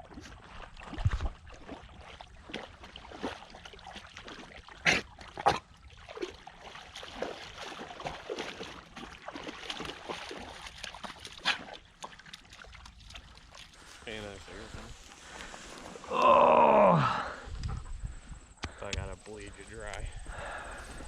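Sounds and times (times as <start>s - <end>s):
dogs splashing in water: 0.0s - 14.3s.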